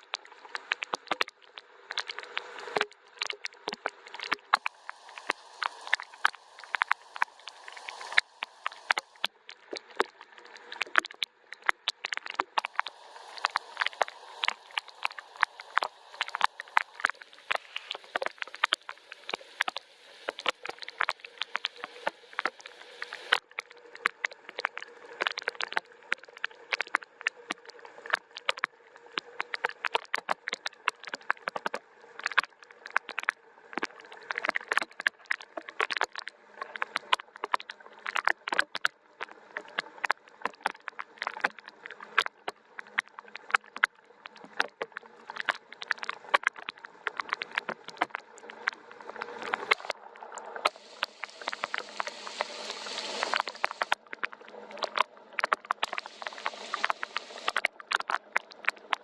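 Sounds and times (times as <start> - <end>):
raindrops tapping and dripping: 0.0 - 59.0
faint rain hiss: 4.5 - 9.4, 12.6 - 24.0, 48.8 - 57.6.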